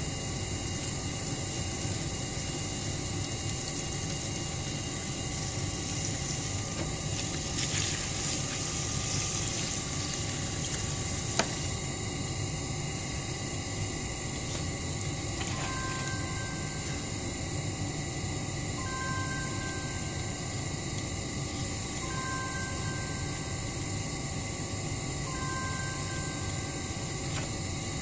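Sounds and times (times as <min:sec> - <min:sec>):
potter's wheel motor hum: 0:00.0 - 0:28.0.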